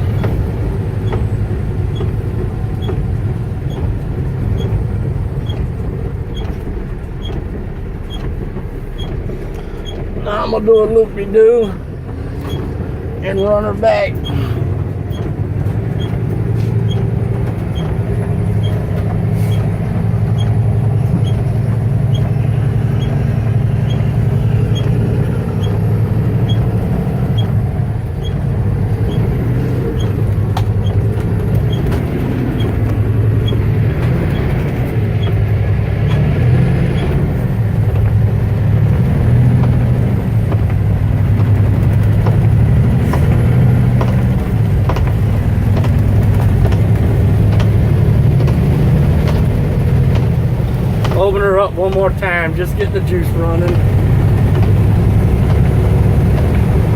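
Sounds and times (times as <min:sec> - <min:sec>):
truck engine running: 0:00.0 - 0:56.9
turn signal ticking: 0:00.0 - 0:56.9.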